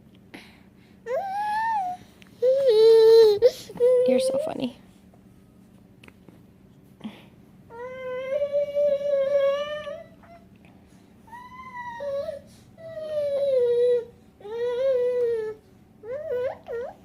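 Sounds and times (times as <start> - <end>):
baby crying: 11.3 - 17.0.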